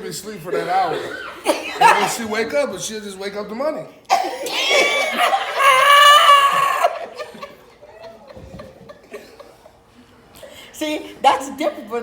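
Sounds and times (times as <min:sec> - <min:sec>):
person squealing with laughter: 0:04.2 - 0:07.2.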